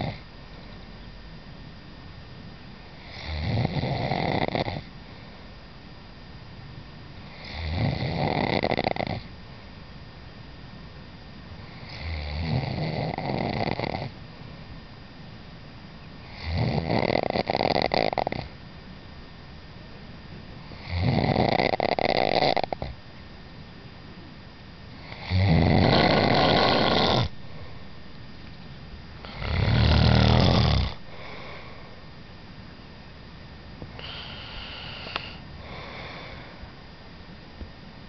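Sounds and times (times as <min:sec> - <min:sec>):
person snoring: 0:20.8 - 0:22.9, 0:25.0 - 0:27.3, 0:29.2 - 0:31.8, 0:34.0 - 0:36.6
quiet breathing: 0:26.2 - 0:28.0, 0:29.2 - 0:32.2, 0:33.8 - 0:36.9.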